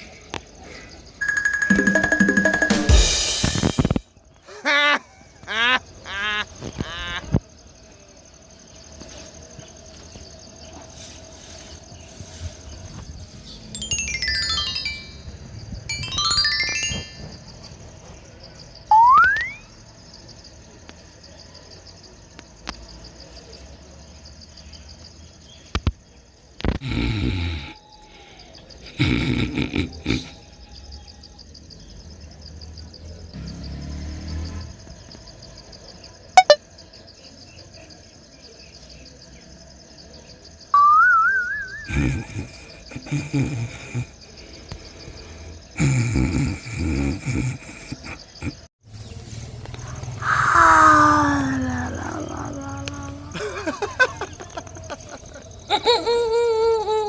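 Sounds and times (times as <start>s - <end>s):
crickets chirring: 0.0s - 57.0s
high-pitched chirring: 1.2s - 4.0s, 13.7s - 17.7s, 18.9s - 19.7s, 36.4s - 36.6s
whistle rising in pitch: 18.9s - 19.6s, 36.4s - 36.6s, 40.8s - 41.9s
snore-like grunts: 26.8s - 27.8s, 28.9s - 30.4s, 41.9s - 44.2s, 45.8s - 48.7s.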